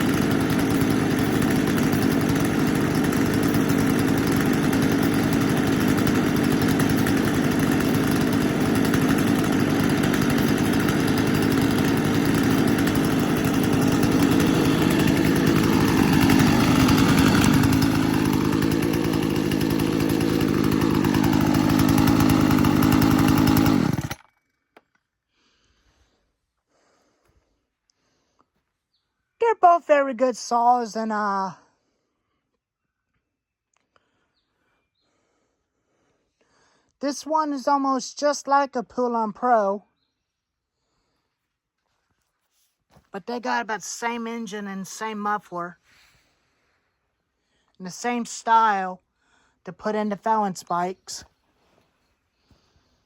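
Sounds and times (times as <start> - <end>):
chainsaw engine running: 0.0 - 24.9, 42.9 - 45.8, 47.9 - 49.0, 49.7 - 51.3.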